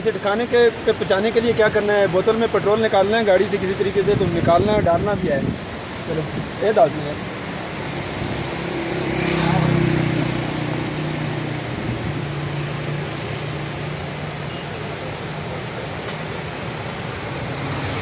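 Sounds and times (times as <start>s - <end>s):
sharp click: 16.0s - 16.3s.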